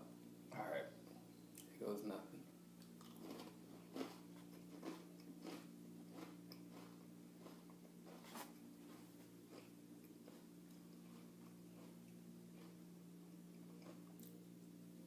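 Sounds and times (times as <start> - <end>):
steady low hum: 0.0 - 15.0
person chewing cookie crunching: 2.8 - 14.6.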